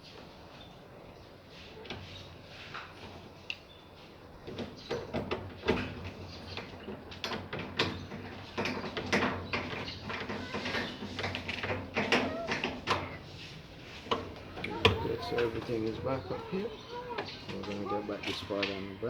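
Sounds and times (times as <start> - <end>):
washing machine parts knocking: 14.0 - 16.5.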